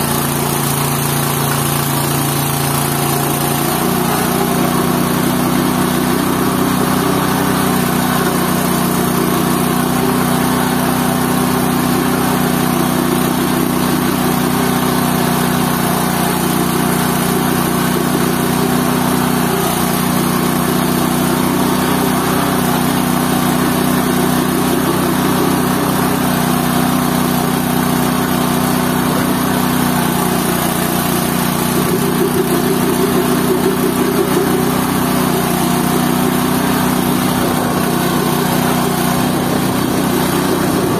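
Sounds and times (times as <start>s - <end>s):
waste pulper machine humming: 0.0s - 40.9s.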